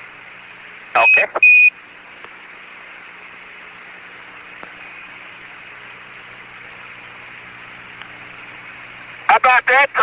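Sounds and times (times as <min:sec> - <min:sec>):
radio link hiss: 0:00.0 - 0:10.0.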